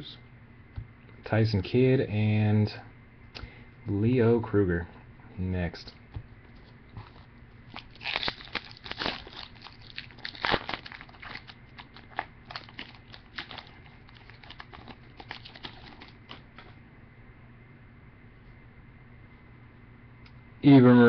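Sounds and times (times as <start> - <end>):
foil wrapper crinkling: 7.0 - 16.7.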